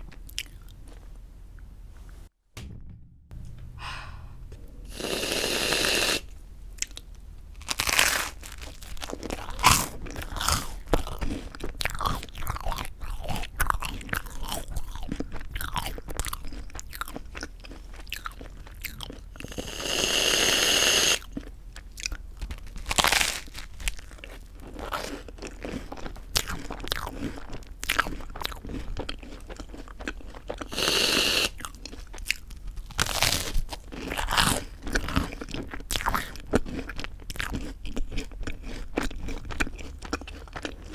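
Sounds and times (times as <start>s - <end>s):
crunching and chewing toast: 0.0s - 1.2s, 6.8s - 40.9s.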